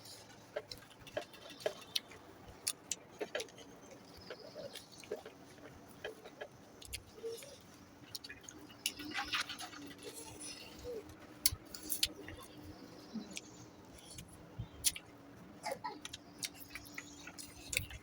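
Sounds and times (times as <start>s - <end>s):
faint steady hum: 0.0s - 18.0s
chewing and mouth smacks: 0.1s - 18.0s.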